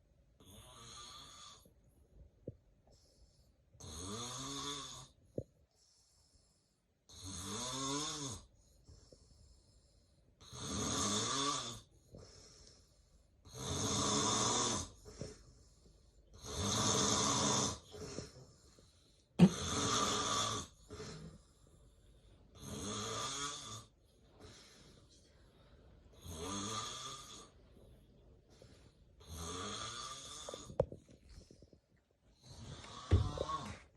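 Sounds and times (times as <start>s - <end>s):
man snoring: 0.4s - 1.6s, 3.8s - 5.2s, 7.1s - 8.5s, 10.4s - 11.9s, 13.5s - 15.0s, 16.4s - 18.4s, 19.4s - 21.4s, 22.6s - 23.9s, 26.2s - 27.5s, 29.2s - 30.8s, 32.4s - 33.8s.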